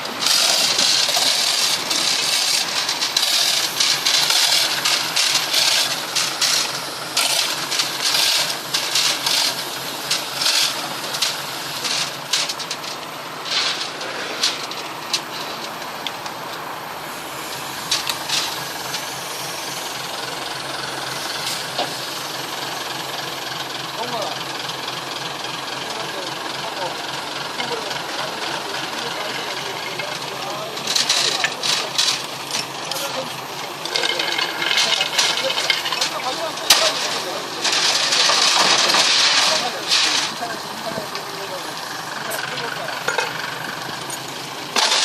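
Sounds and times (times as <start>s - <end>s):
metallic clattering and rattling: 0.1s - 16.1s, 27.7s - 45.0s.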